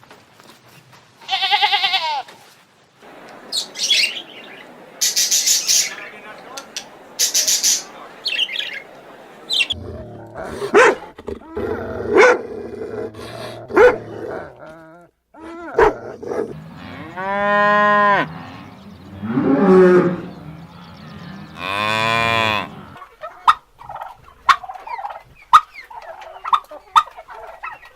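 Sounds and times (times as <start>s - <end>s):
cattle mooing: 16.5s - 23.0s.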